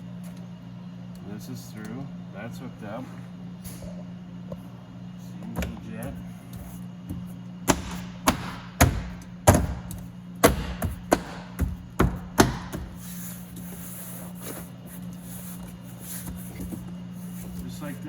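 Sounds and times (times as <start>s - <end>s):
sharp knocks on car door: 7.7s - 12.9s.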